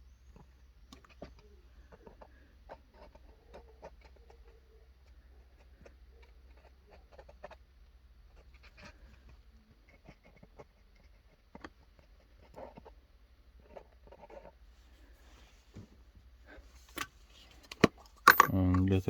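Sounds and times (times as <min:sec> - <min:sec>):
clicks and taps of small parts: 0:17.0 - 0:19.0.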